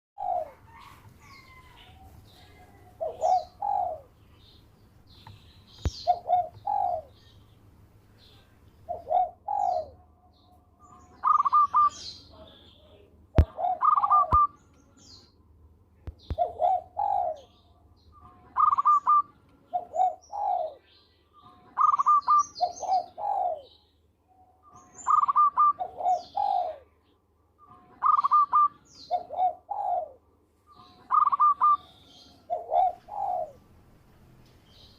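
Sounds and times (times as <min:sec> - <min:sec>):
dove cooing: 0:00.2 - 0:04.2, 0:05.8 - 0:07.3, 0:08.9 - 0:10.1, 0:11.1 - 0:12.1, 0:13.4 - 0:14.6, 0:16.2 - 0:17.6, 0:18.5 - 0:20.8, 0:21.8 - 0:23.8, 0:25.0 - 0:27.0, 0:28.0 - 0:30.2, 0:30.9 - 0:33.7.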